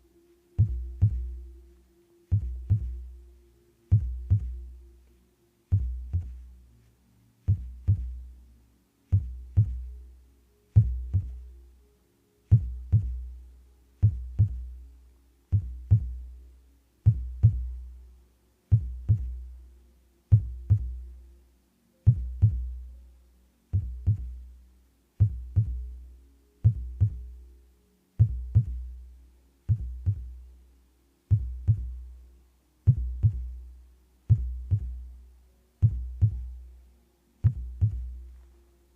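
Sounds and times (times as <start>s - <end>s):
faint steady hum: 0.0s - 38.9s
heartbeat: 0.6s - 1.6s, 2.3s - 3.2s, 3.9s - 4.8s, 5.7s - 6.5s, 7.5s - 8.3s, 9.1s - 10.0s, 10.8s - 11.5s, 12.5s - 13.4s, 14.0s - 14.8s, 15.5s - 16.3s, 17.0s - 17.9s, 18.7s - 19.5s, 20.3s - 21.1s, 22.0s - 22.8s, 23.7s - 24.4s, 25.2s - 26.0s, 26.6s - 27.4s, 28.2s - 29.0s, 29.7s - 30.5s, 31.3s - 32.1s, 32.9s - 33.7s, 34.3s - 35.2s, 35.8s - 36.7s, 37.4s - 38.4s.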